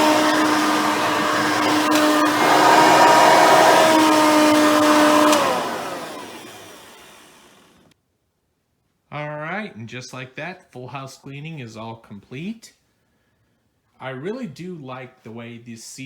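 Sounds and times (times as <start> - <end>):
vacuum cleaner motor running: 0.0 - 7.9
vacuum motor winding down: 0.0 - 7.9.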